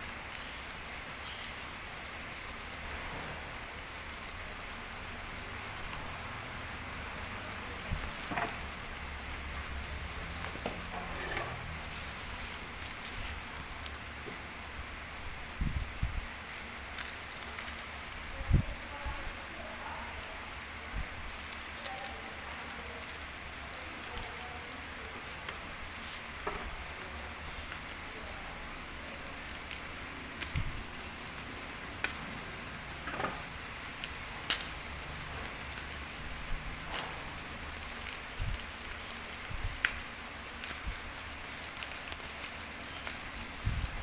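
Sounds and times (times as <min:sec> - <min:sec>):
steady hiss: 0:00.0 - 0:44.0
packaging crinkling: 0:29.0 - 0:44.0.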